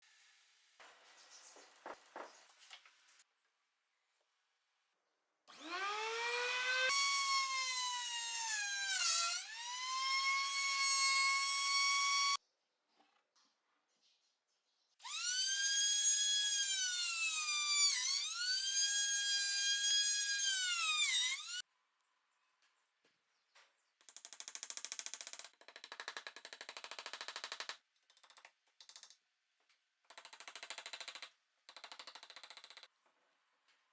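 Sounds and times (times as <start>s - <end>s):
power tool motor whining: 5.5s - 12.4s.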